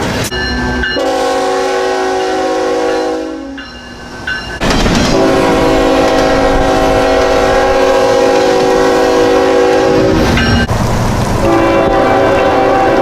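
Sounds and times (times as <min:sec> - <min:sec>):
locomotive air horn chord: 0:01.0 - 0:03.6, 0:05.1 - 0:10.2, 0:11.4 - 0:13.0.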